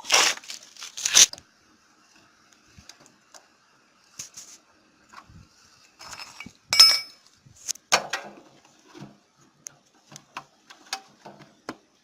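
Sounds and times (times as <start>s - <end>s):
clinks of small metal parts: 6.0s - 7.3s
ringing metal clatter: 6.2s - 7.2s.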